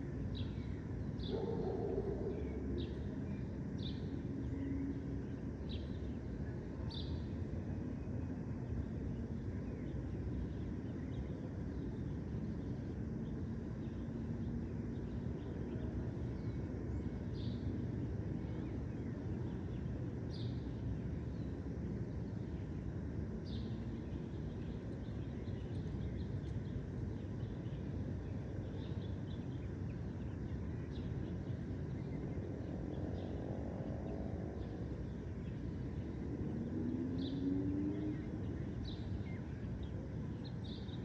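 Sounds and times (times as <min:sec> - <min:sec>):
distant city traffic rumble: 0:00.0 - 0:41.0
small birds twittering: 0:00.0 - 0:41.0.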